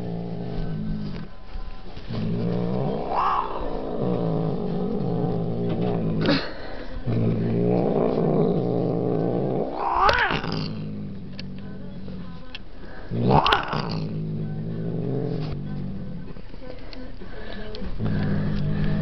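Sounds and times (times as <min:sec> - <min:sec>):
cat growling and yowling: 0:02.2 - 0:06.3, 0:07.3 - 0:11.5, 0:13.2 - 0:15.5.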